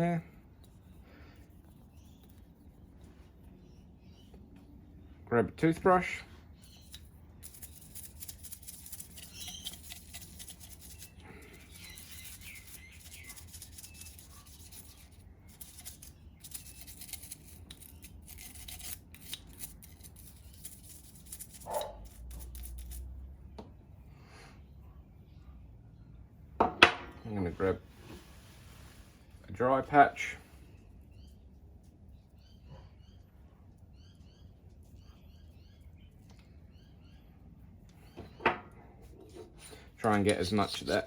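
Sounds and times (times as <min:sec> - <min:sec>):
toothbrush scrubbing metal: 0:06.7 - 0:23.1.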